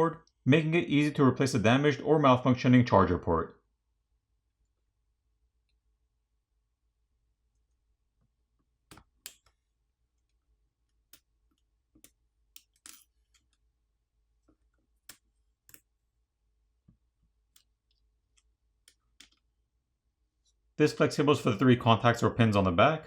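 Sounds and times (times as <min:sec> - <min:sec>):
small tools clicking and tapping: 0:11.1 - 0:13.6, 0:17.5 - 0:19.5.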